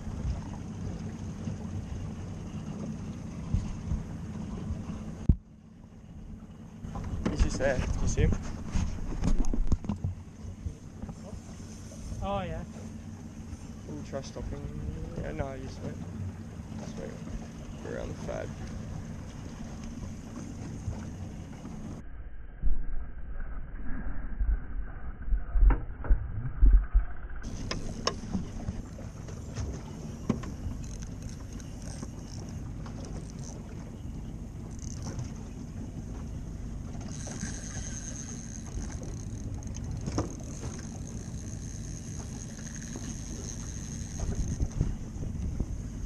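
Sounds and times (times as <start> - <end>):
water lapping against kayak hull: 0.0 - 22.0, 24.5 - 46.0
wind buffeting microphone: 25.4 - 46.0.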